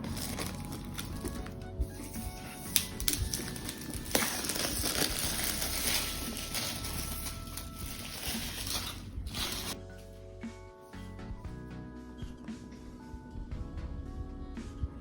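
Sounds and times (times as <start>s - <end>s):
packaging crinkling: 0.0s - 9.8s.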